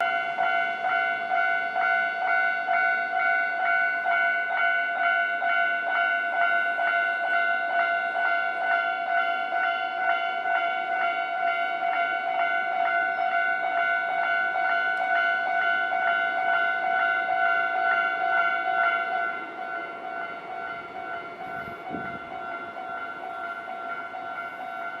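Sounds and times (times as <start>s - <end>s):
level-crossing alarm clanging: 0.0s - 25.0s.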